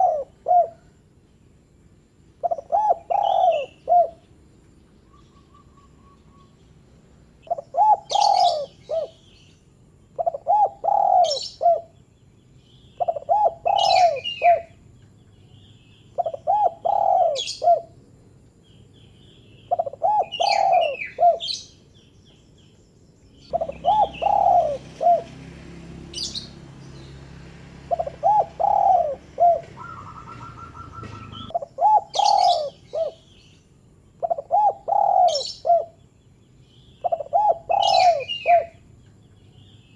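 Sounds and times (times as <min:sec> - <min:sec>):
dove cooing: 0:00.0 - 0:01.0, 0:02.4 - 0:04.3, 0:07.4 - 0:09.2, 0:10.2 - 0:12.0, 0:13.0 - 0:14.8, 0:16.2 - 0:18.0, 0:19.7 - 0:21.7, 0:23.5 - 0:33.4, 0:34.2 - 0:36.0, 0:37.0 - 0:38.8
high bird chirps: 0:23.4 - 0:33.6.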